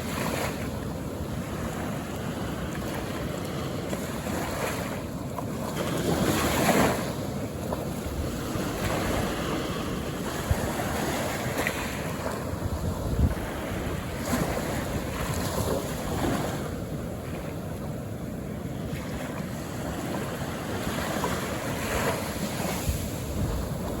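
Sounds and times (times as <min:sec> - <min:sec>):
small waves breaking on shore: 0:00.0 - 0:24.0
wind rumbling on microphone: 0:00.0 - 0:24.0.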